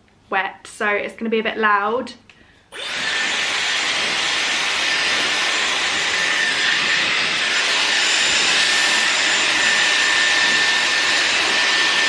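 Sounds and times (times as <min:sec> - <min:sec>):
hairdryer blowing with motor whine: 0:02.7 - 0:12.0.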